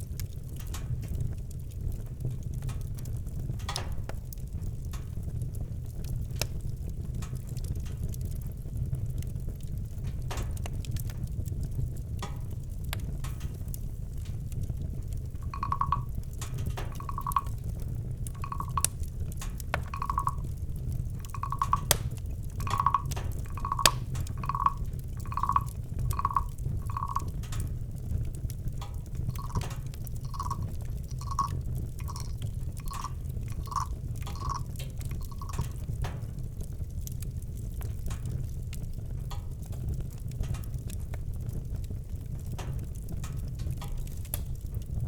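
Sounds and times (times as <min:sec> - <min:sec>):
campfire crackling: 0:00.0 - 0:44.8.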